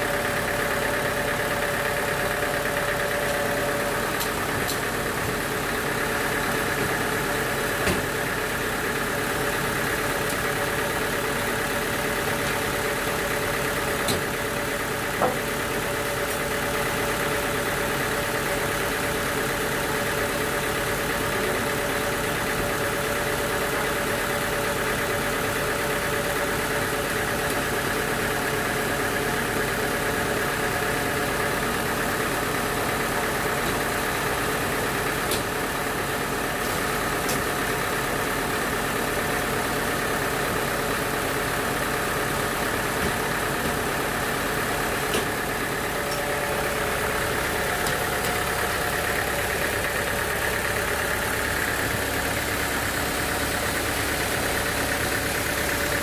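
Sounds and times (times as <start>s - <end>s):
sawmill engine running: 0.0s - 56.0s.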